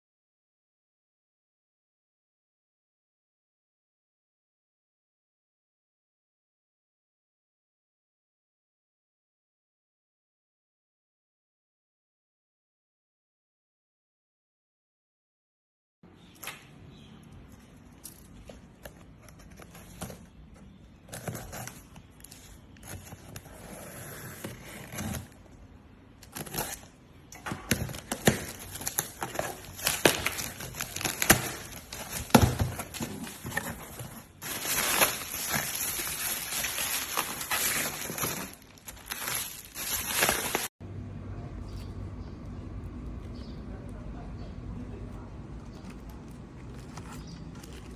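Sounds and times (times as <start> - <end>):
packaging crinkling and rustling: 17.4 - 40.7.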